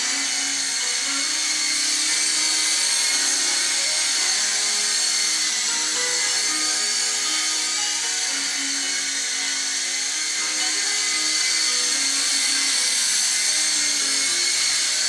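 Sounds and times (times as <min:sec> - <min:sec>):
toy helicopter motor whine: 0:00.0 - 0:15.0.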